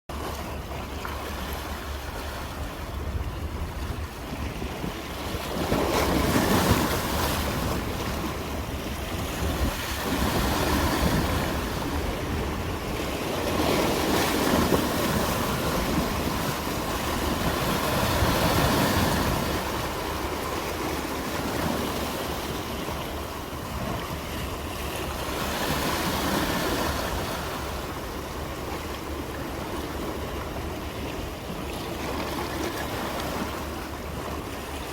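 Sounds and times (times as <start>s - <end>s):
sea waves washing in: 0.1s - 34.9s.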